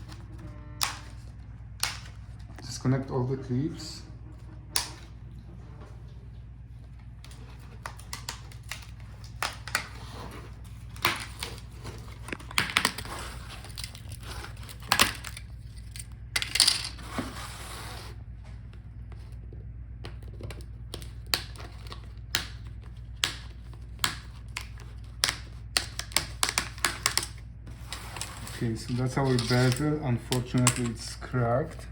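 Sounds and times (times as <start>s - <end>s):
steady low hum: 0.0s - 31.9s
plastic cracks: 7.2s - 9.9s
plastic clips clicking and snapping: 23.2s - 27.4s.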